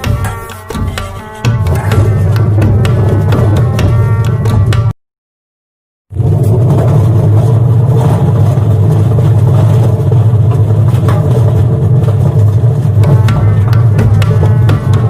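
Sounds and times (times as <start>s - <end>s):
washing machine spinning: 6.2s - 15.0s.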